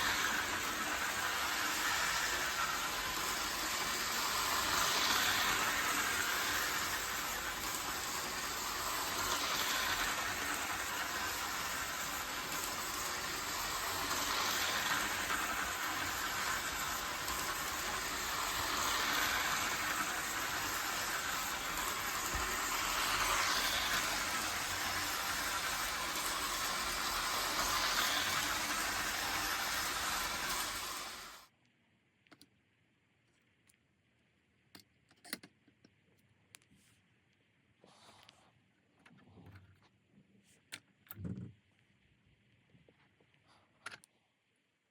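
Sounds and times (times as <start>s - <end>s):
toy train whirring rattle: 0.0s - 31.5s.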